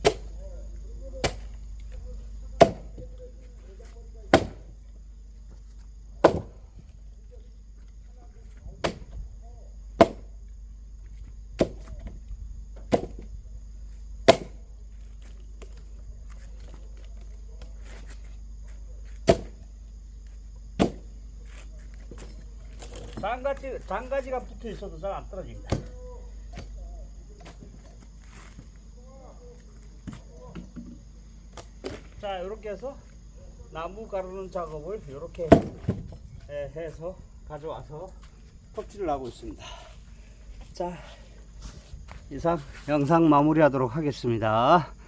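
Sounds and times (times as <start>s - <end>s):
axe chopping firewood: 0.0s - 0.4s, 1.2s - 3.2s, 4.3s - 4.8s, 6.2s - 6.9s, 8.8s - 9.2s, 10.0s - 10.4s, 11.6s - 12.2s, 12.8s - 13.3s, 14.2s - 15.8s, 19.0s - 19.7s, 20.8s - 23.4s, 25.6s - 28.8s, 35.4s - 36.1s.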